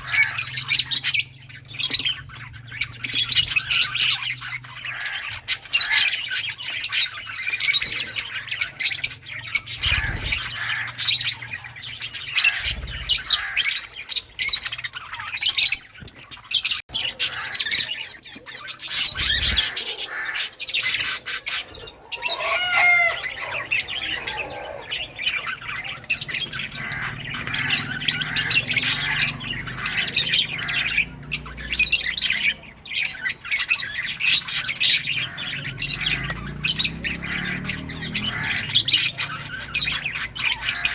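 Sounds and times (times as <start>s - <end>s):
lovebirds chirping and squawking: 0.0s - 40.9s.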